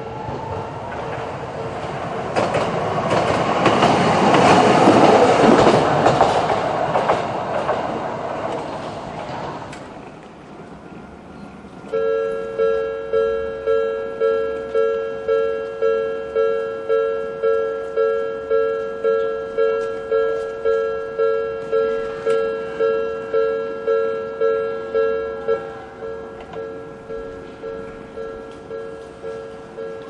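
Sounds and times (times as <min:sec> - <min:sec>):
level-crossing two-tone ding: 0:11.9 - 0:30.0.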